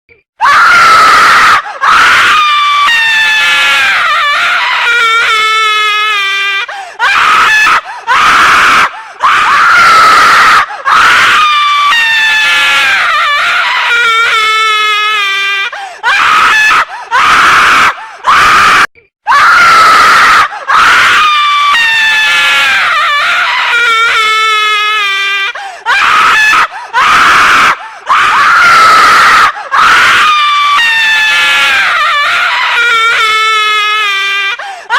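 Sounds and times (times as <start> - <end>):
woman screaming: 0.4 - 34.9.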